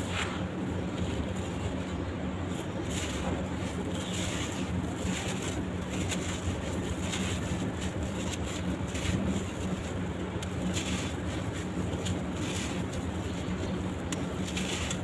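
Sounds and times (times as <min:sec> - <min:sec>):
steady low hum: 0:00.0 - 0:15.0
blocks crunching and crackling: 0:02.5 - 0:15.0.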